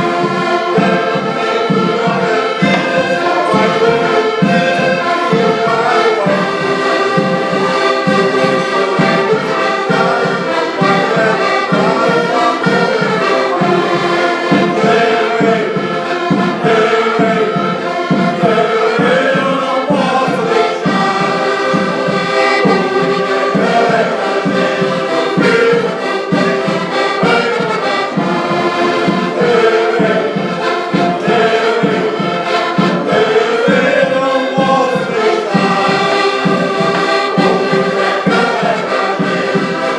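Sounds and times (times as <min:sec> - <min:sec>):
voices singing over instruments: 0:00.0 - 0:39.9.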